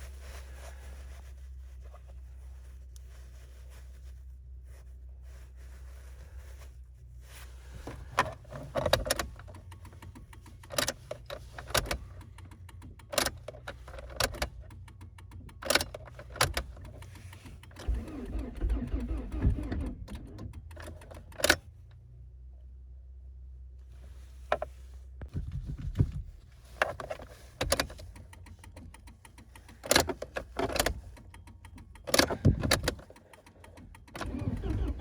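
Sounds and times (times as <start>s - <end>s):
engine rattling: 0.0s - 22.4s, 23.9s - 35.0s
engine clicks and knocks: 7.8s - 22.0s, 24.5s - 35.0s
car engine humming: 23.9s - 35.0s.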